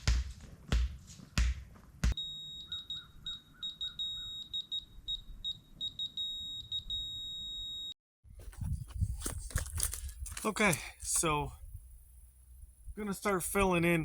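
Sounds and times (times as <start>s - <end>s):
laser level receiver beeping: 2.2s - 7.9s.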